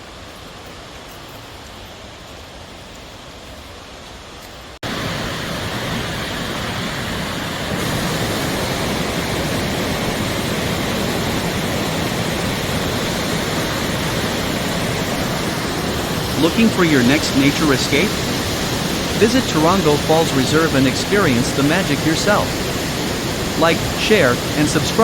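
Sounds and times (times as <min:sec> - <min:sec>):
waterfall rushing: 0:04.9 - 0:25.0.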